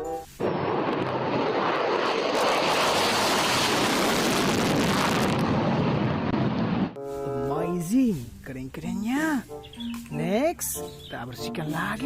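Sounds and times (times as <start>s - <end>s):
jet engine rushing: 0.4s - 7.0s.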